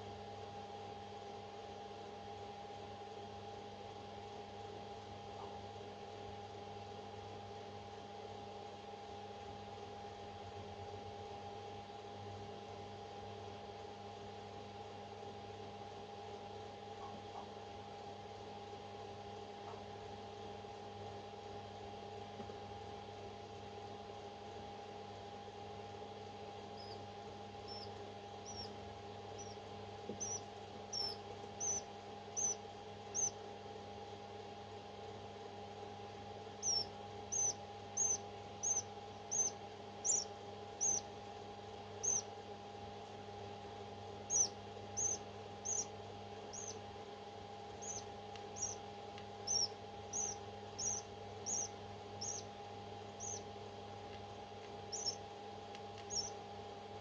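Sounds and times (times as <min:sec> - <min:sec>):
electrical hum: 0:15.9 - 0:57.0
parrot chick peeping: 0:26.2 - 0:33.6, 0:36.0 - 0:42.5, 0:43.7 - 0:56.5.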